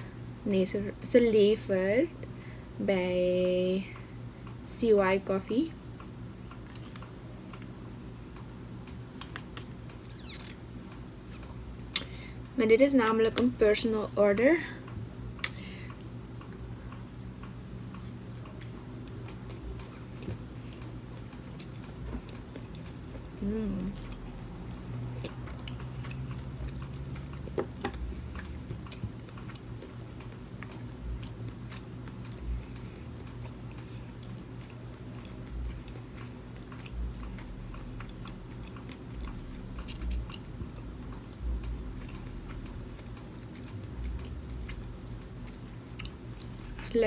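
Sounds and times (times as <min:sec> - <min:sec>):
steady low hum: 0:00.0 - 0:47.0
person chewing: 0:15.4 - 0:46.9
soft low thumps: 0:36.9 - 0:38.6, 0:39.2 - 0:43.0.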